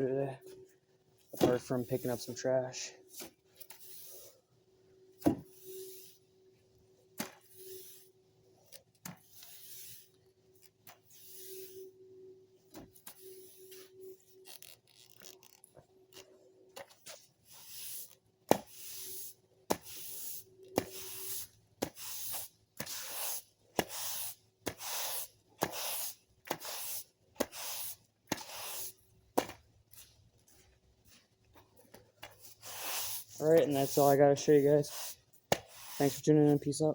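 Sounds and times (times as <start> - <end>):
broom sweeping floor: 1.4 - 2.4, 3.1 - 4.4, 5.3 - 6.3, 7.2 - 8.2, 9.1 - 10.2, 10.8 - 12.0, 12.8 - 14.4, 16.9 - 31.3, 32.2 - 36.9.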